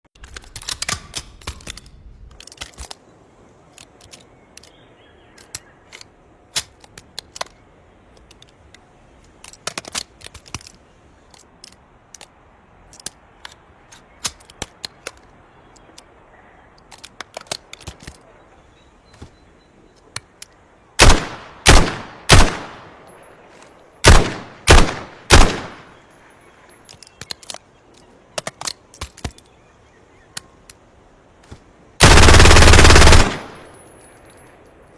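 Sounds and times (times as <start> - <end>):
quiet gunshots and clicks: 0.2 - 34.9
loud single gunshots ringing: 21.0 - 22.9, 24.0 - 25.9
submachine gun burst: 32.0 - 33.6.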